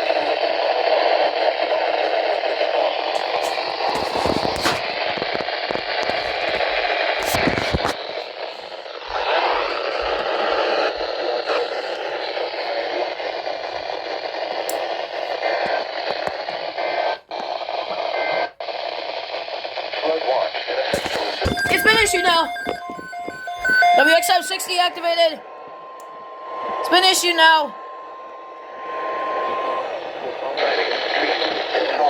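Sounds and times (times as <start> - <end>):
radio static hiss: 0.0 - 32.0.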